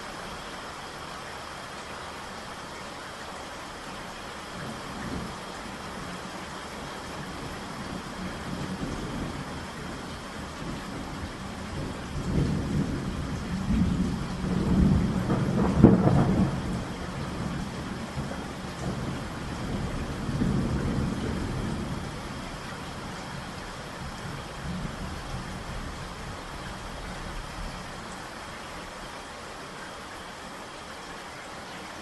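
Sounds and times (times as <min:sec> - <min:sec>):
steady rain: 0:00.0 - 0:32.0
rolling thunder with sharp crack: 0:11.8 - 0:17.5.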